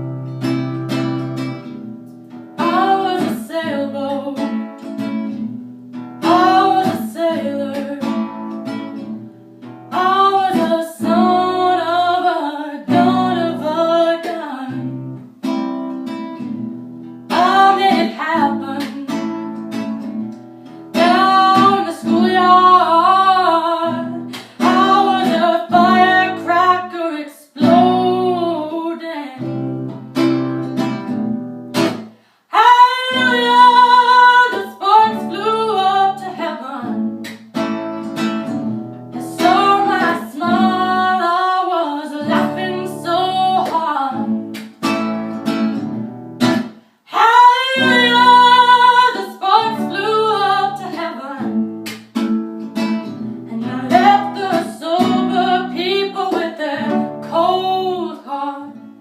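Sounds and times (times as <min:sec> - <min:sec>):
strummed acoustic guitar: 0:00.0 - 0:59.0
woman singing: 0:02.6 - 0:05.5, 0:06.2 - 0:09.1, 0:09.9 - 0:15.2, 0:17.3 - 0:20.2, 0:20.9 - 0:30.0, 0:32.5 - 0:37.3, 0:39.1 - 0:44.6, 0:47.1 - 0:52.0, 0:53.0 - 0:59.0.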